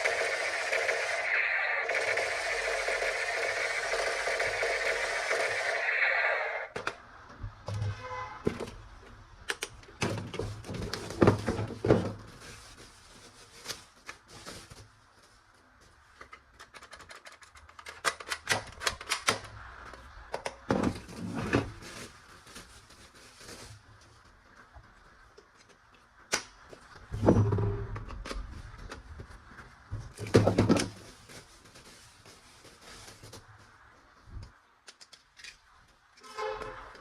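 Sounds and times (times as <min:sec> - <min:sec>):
steady rushing noise: 0:00.0 - 0:06.8
plastic toy parts clicking: 0:16.2 - 0:19.5.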